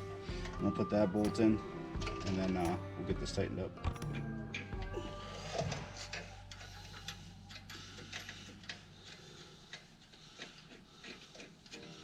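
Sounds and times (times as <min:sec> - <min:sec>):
hand tools clicking on metal: 0:00.3 - 0:02.8, 0:05.4 - 0:12.0.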